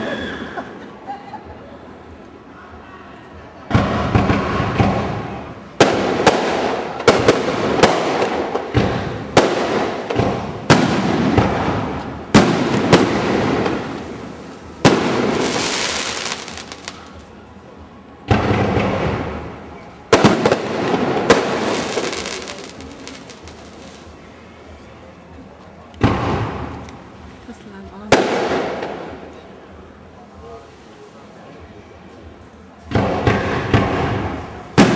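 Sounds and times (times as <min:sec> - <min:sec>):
firework bangs: 0:03.7 - 0:17.2, 0:18.2 - 0:24.1, 0:26.0 - 0:27.1, 0:28.1 - 0:29.4, 0:32.9 - 0:34.9
hissing crackle of fireworks: 0:03.7 - 0:17.4, 0:18.2 - 0:24.8, 0:26.0 - 0:29.5, 0:32.9 - 0:34.9.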